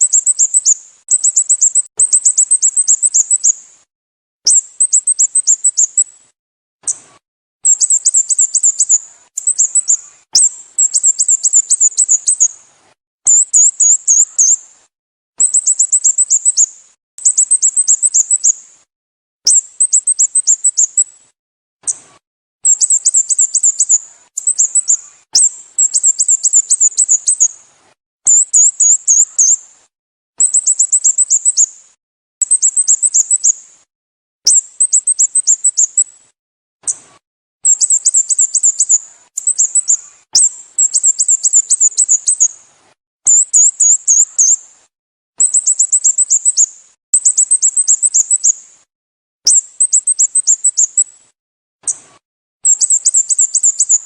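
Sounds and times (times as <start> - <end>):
bird chirping sharply: 0.0 - 3.6, 4.5 - 6.1, 7.6 - 12.6, 13.3 - 14.6, 22.6 - 27.6, 28.3 - 29.6, 37.6 - 42.6, 43.3 - 44.6, 45.4 - 48.6.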